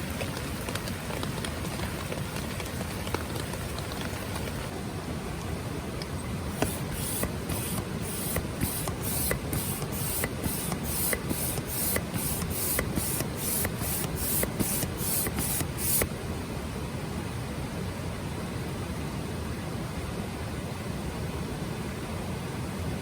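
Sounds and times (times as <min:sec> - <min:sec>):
rhythmic hissing rasp: 0:06.5 - 0:16.1.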